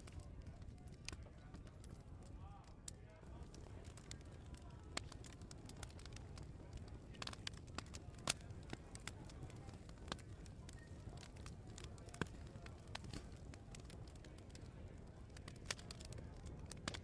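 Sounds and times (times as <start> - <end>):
wood fire crackling and popping: 0.0 - 17.0.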